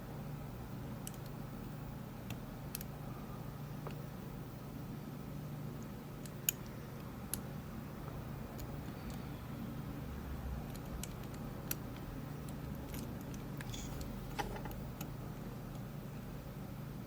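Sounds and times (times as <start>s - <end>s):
low steady hum: 0.0s - 17.0s
lock pick clicks and scrapes: 13.0s - 14.8s.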